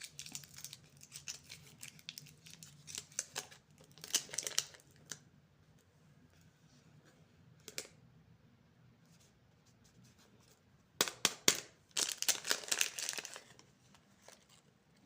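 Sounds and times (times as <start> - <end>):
plastic wrapper crinkling: 0.0 - 5.2, 11.9 - 14.7.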